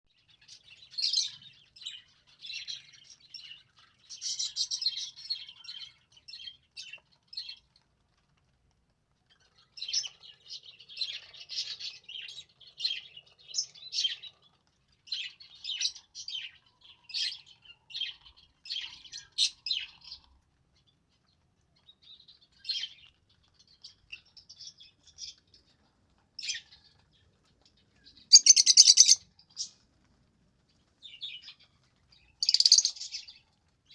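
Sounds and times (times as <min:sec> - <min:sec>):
small parrots chirping: 0:00.3 - 0:07.7, 0:09.4 - 0:20.2, 0:27.9 - 0:29.8, 0:31.1 - 0:33.5.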